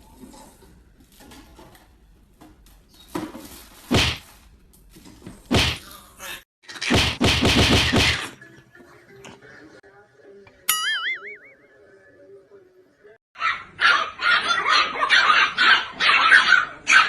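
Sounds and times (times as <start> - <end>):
sharp knocks: 6.9 - 8.2.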